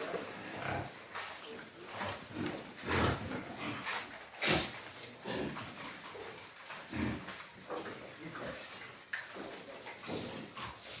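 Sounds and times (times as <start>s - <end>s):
pigs grunting and squealing: 0.0s - 1.0s, 1.6s - 6.0s, 6.8s - 7.4s.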